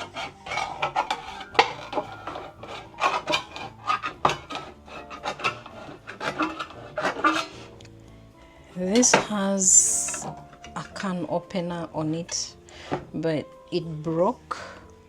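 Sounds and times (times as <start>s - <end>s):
can opener clicking and scraping: 0.0s - 8.0s, 10.0s - 11.1s.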